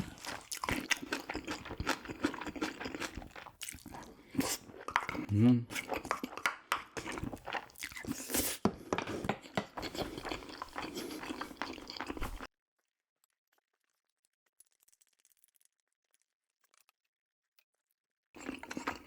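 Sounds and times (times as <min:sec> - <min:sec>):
person chewing food: 0:00.0 - 0:12.5, 0:18.4 - 0:19.0.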